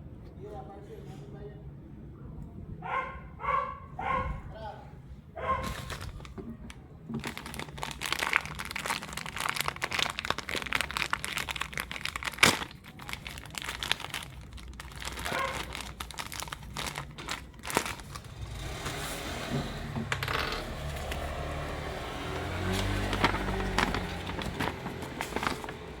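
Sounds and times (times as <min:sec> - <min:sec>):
plastic packaging crinkling: 0:05.6 - 0:18.8, 0:20.0 - 0:26.0.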